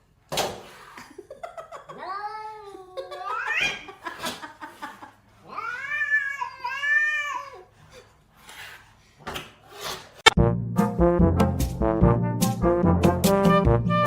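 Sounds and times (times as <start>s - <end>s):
cat yowling: 2.0s - 3.9s, 5.4s - 7.7s.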